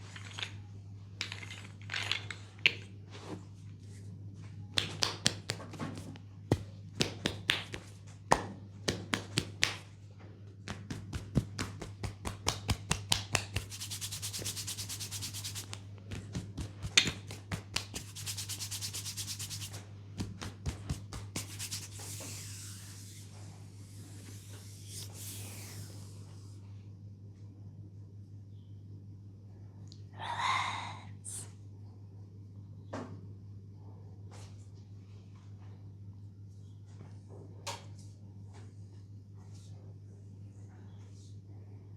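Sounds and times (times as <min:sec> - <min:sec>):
steady low hum: 0:00.0 - 0:41.9
hands tapping and slapping skin: 0:04.7 - 0:09.9, 0:10.6 - 0:22.0
hands rubbing skin: 0:04.8 - 0:08.0, 0:08.9 - 0:09.9, 0:10.7 - 0:26.2.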